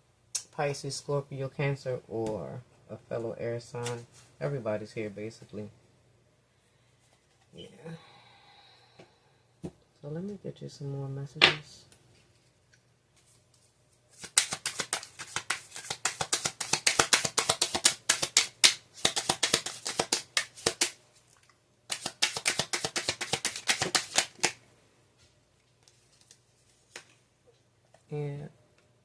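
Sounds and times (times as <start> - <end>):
cards being shuffled: 13.2 - 21.0, 21.9 - 24.6, 25.8 - 27.2.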